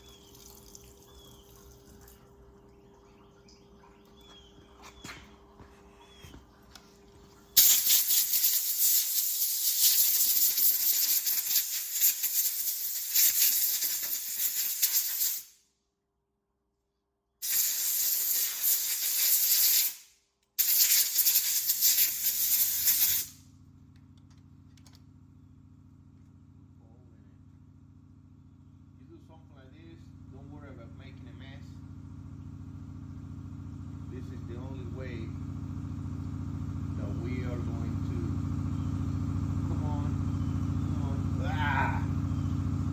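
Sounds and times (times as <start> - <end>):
compressed air blow gun hissing: 7.6 - 15.6, 17.4 - 20.0, 20.6 - 23.4.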